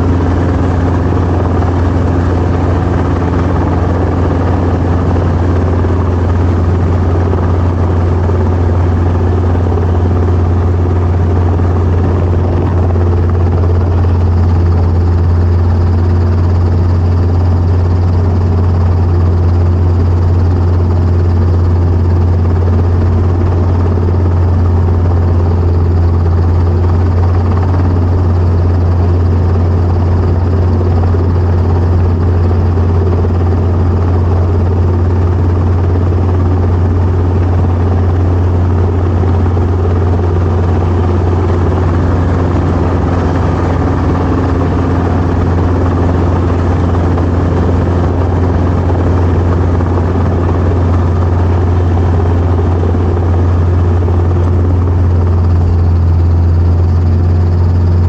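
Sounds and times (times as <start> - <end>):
helicopter rotor and engine drone: 0.0 - 58.0.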